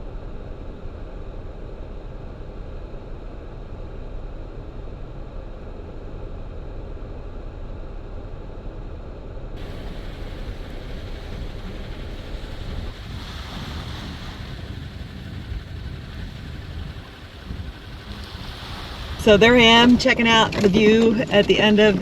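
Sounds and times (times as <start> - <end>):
car driving on dirt road: 9.6 - 22.0
wind noise on microphone: 9.6 - 22.0.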